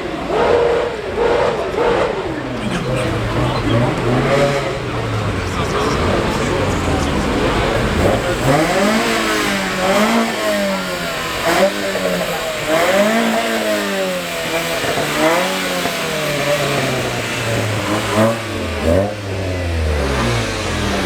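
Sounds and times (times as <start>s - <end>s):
car engine revving: 0.0s - 21.0s
low steady engine note: 2.4s - 14.9s.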